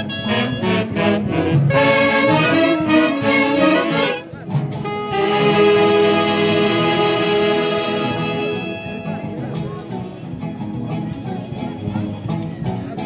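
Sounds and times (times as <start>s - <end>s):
live band with saxophone melody: 0.0s - 10.3s.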